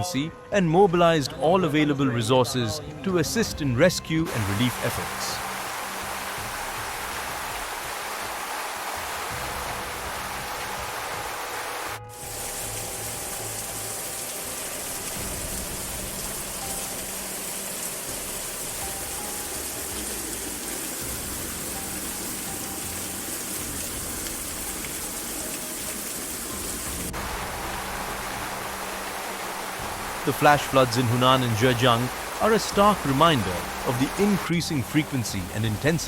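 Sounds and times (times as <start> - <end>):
background music: 0.0 - 36.0
rushing water: 3.1 - 36.0.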